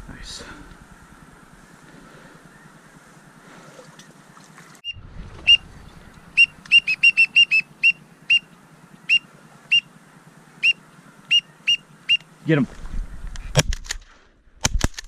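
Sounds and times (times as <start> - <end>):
duck whistle call peeps: 6.4 - 8.5, 9.1 - 9.9, 10.6 - 12.2.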